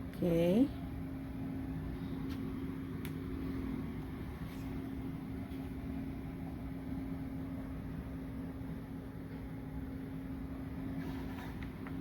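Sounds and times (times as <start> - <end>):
low mechanical hum: 0.0 - 12.0.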